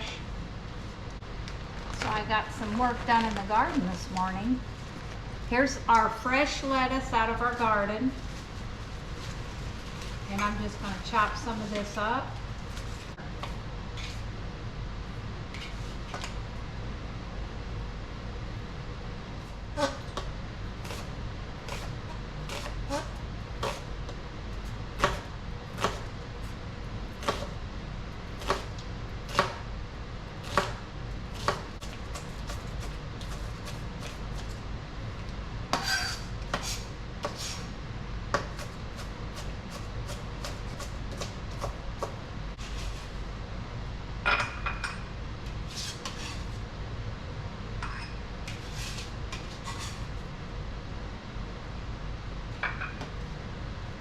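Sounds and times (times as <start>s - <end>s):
knife chopping on cutting board: 22.5s - 23.8s, 25.0s - 26.0s, 28.4s - 28.7s, 31.4s - 34.2s.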